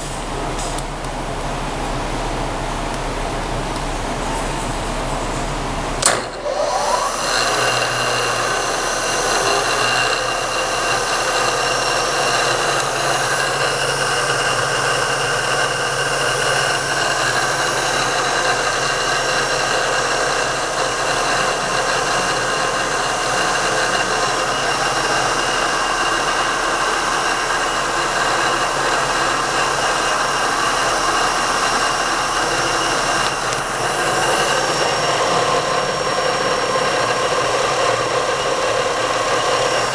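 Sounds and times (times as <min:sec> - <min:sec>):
motor switch click: 0:06.0 - 0:07.0
electric motor whining: 0:06.3 - 0:39.9.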